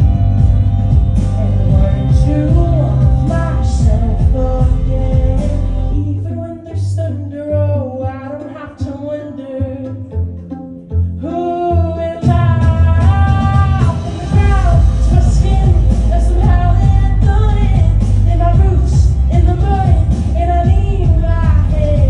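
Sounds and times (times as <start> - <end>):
short bass hits: 0.0 - 6.0, 12.2 - 22.0
pop band backing: 0.0 - 7.0, 11.4 - 22.0
person singing: 0.0 - 10.2, 11.2 - 22.0.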